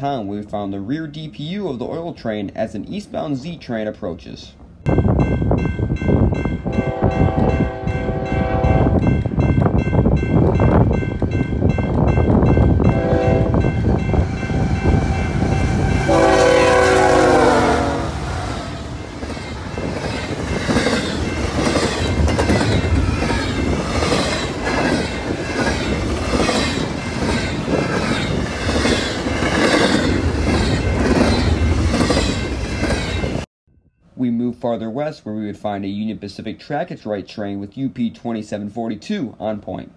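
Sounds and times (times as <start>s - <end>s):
freight train rumble: 0.0s - 33.5s
locomotive horn: 6.6s - 9.1s, 12.8s - 18.9s
wheels clacking over rail joints: 19.1s - 33.4s.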